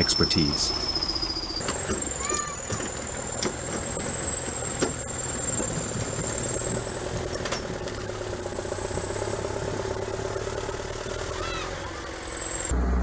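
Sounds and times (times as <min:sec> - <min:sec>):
heavy diesel engine idling: 0:00.0 - 0:13.0.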